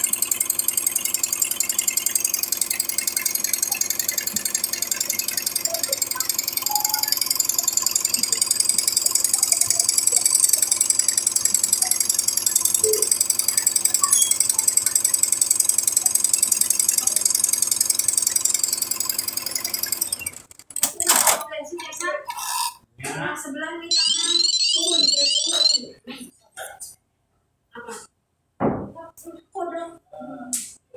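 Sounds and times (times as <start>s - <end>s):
embroidery machine clattering: 0.0s - 21.4s.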